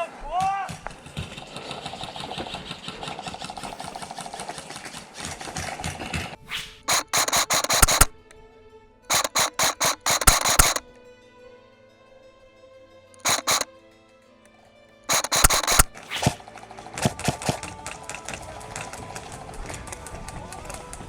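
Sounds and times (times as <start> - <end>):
airsoft gun full-auto fire: 6.9 - 8.2, 9.1 - 10.8, 13.2 - 13.6, 15.1 - 16.0.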